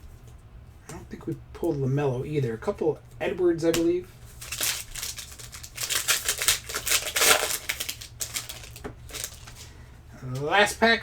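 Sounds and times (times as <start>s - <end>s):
cards clicking and flicking: 3.7s - 9.7s
packaging rustling: 4.2s - 9.8s.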